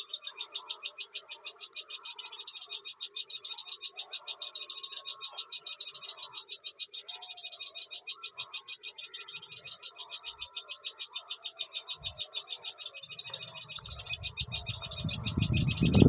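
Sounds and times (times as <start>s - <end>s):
insects chirring: 12.0s - 16.0s
low animal calls: 13.1s - 16.0s.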